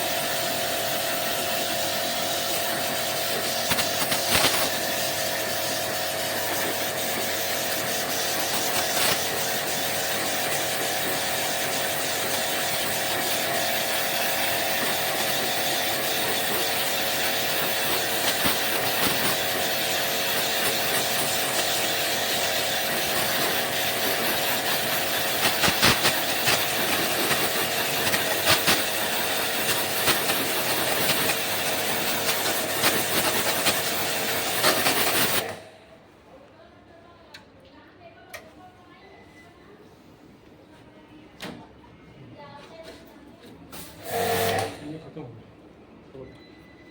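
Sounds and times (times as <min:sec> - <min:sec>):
machine hissing and humming: 0:00.0 - 0:35.7.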